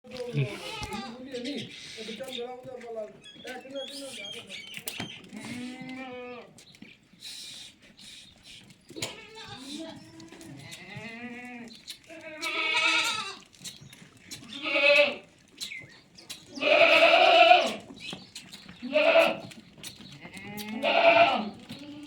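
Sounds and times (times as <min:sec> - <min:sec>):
goats bleating: 0:00.2 - 0:01.7, 0:05.3 - 0:06.6, 0:09.0 - 0:13.5, 0:14.4 - 0:15.3, 0:16.5 - 0:17.9, 0:18.8 - 0:19.6, 0:20.2 - 0:22.0.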